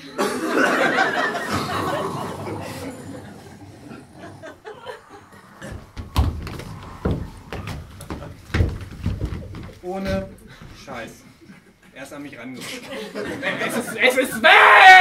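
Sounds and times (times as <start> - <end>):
audience laughing: 0.0 - 8.5, 12.8 - 14.4
dull thumps: 5.6 - 10.9.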